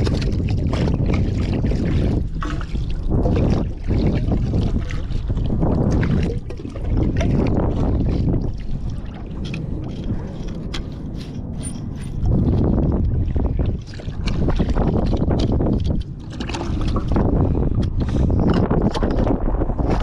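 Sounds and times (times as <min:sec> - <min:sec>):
water dripping: 0:00.0 - 0:10.8
water sloshing and splashing: 0:00.0 - 0:20.0
wind buffeting microphone: 0:00.0 - 0:20.0.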